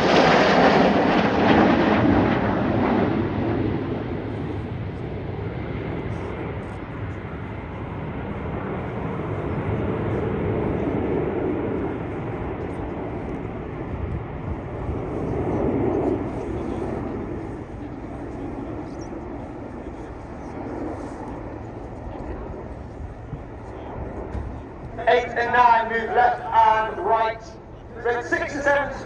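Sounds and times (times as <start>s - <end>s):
jets flying past: 0.0s - 29.0s.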